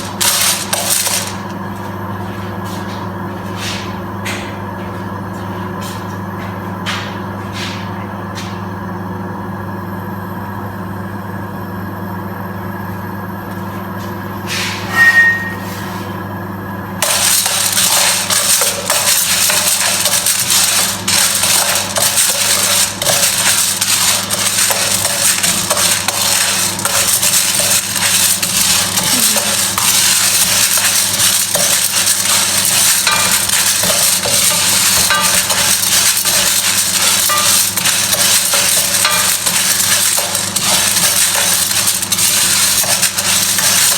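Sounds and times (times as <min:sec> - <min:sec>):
coffee beans rattling in metal pan: 0:00.0 - 0:01.5, 0:17.0 - 0:43.9
steady low hum: 0:00.0 - 0:43.9
short loud tone: 0:14.9 - 0:15.8.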